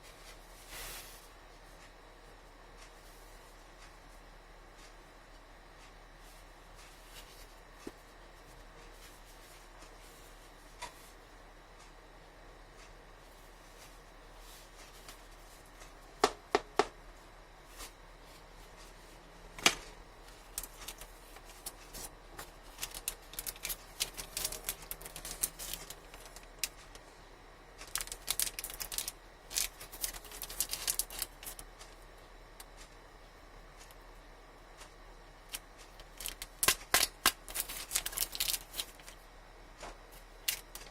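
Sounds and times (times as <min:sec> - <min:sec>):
packaging rustling: 0:20.3 - 0:27.0, 0:27.8 - 0:31.7, 0:35.5 - 0:39.2.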